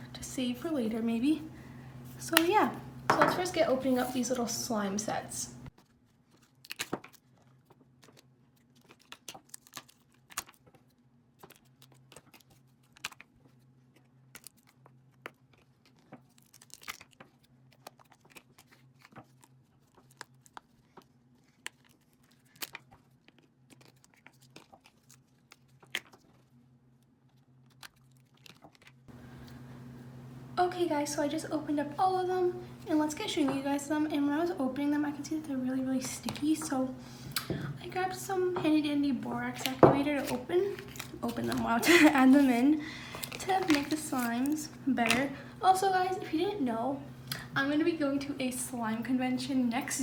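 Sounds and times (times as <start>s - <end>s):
plastic packaging crinkling: 5.7s - 26.6s, 27.2s - 29.6s, 36.0s - 45.8s.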